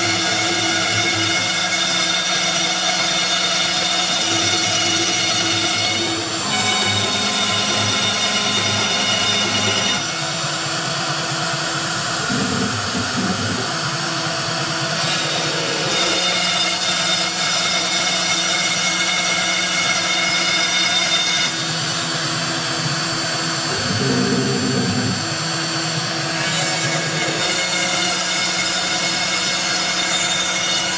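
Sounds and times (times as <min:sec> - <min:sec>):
high-pitched motor whine: 0:00.0 - 0:30.9
axis motors humming: 0:03.7 - 0:17.2, 0:21.5 - 0:28.0.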